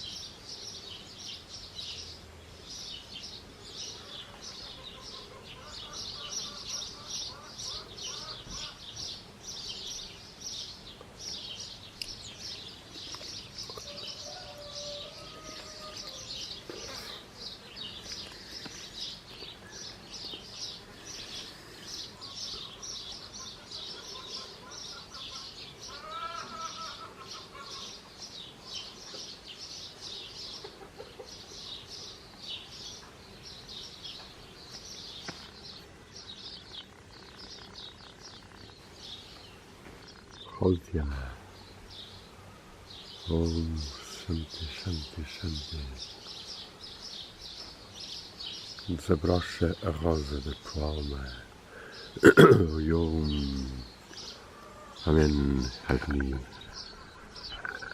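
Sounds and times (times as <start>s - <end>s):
lower bird call: 3.7s - 33.0s, 33.7s - 57.9s
high bird chirp: 42.9s - 57.9s.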